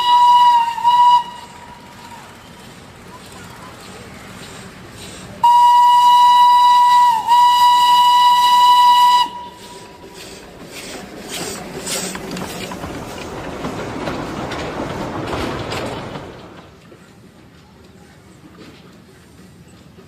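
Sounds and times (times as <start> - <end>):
loud high train whistle: 0.0 - 2.3, 5.4 - 10.0
train running along rails: 0.0 - 20.0.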